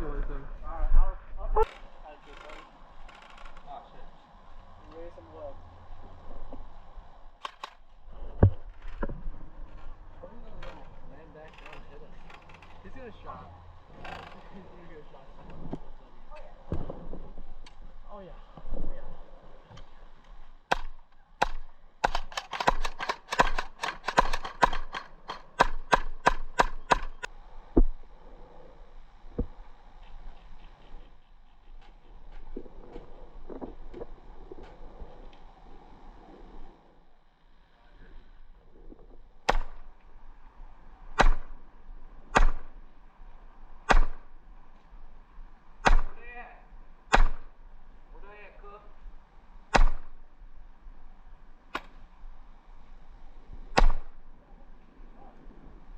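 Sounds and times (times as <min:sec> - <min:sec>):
airsoft gun shots: 0:20.7 - 0:27.3, 0:41.2 - 0:41.6, 0:42.3 - 0:42.7, 0:43.9 - 0:44.3, 0:45.8 - 0:46.2, 0:47.1 - 0:47.5, 0:49.7 - 0:50.2.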